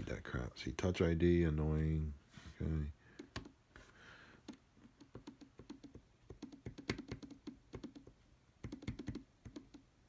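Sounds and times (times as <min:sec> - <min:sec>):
fingertip tapping touchscreen: 0:03.1 - 0:03.6, 0:04.4 - 0:09.9.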